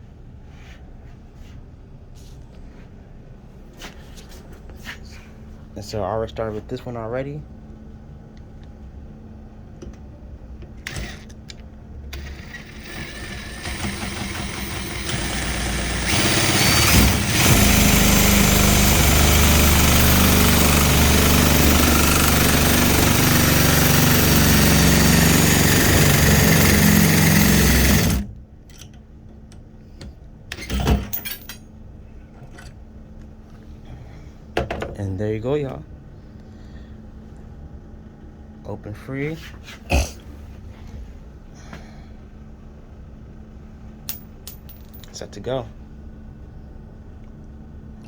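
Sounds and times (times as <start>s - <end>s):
power drill boring: 10.8s - 11.3s, 12.1s - 28.3s.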